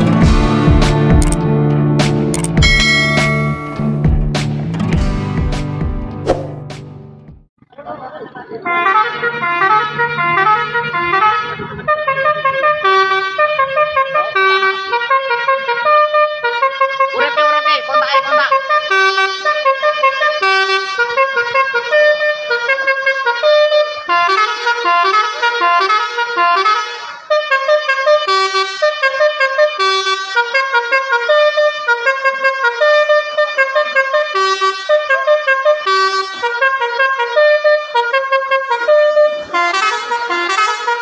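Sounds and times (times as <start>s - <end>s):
musical bus horn melody: 8.5s - 41.0s.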